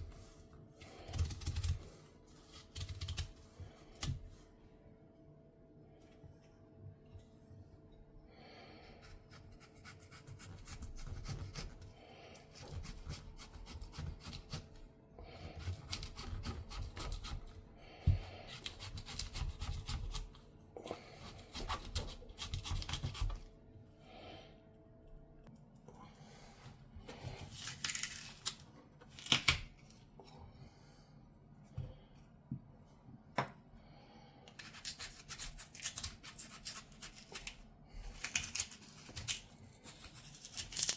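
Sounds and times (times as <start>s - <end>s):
scraping and rubbing radish: 0.0s - 4.4s, 8.7s - 23.5s, 27.0s - 30.4s, 34.5s - 40.9s.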